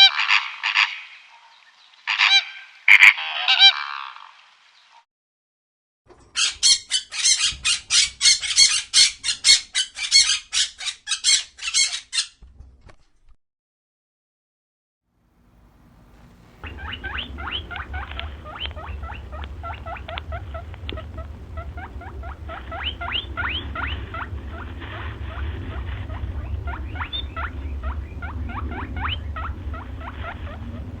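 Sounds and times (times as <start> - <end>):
rodent squeaking: 6.4 - 12.4, 16.5 - 31.0
low hum: 15.2 - 31.0.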